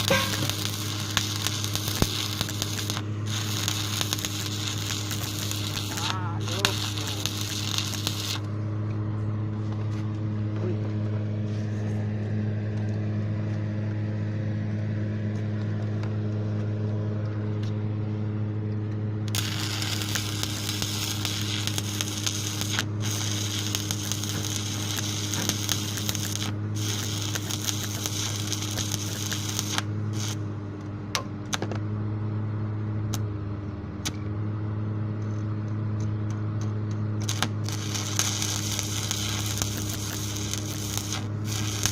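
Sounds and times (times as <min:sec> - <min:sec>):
welding arc crackling: 0:00.0 - 0:08.5, 0:19.3 - 0:30.4, 0:37.2 - 0:41.9
low hum: 0:00.0 - 0:41.9.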